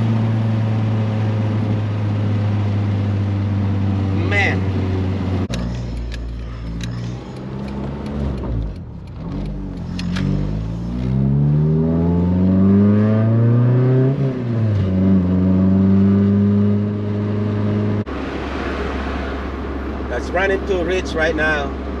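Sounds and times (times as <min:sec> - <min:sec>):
engine revving at full throttle: 0:09.3 - 0:19.4.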